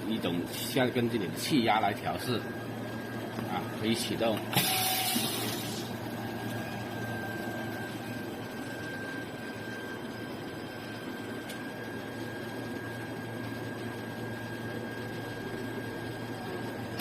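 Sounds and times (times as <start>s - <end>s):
welding machine humming: 0.0s - 14.2s.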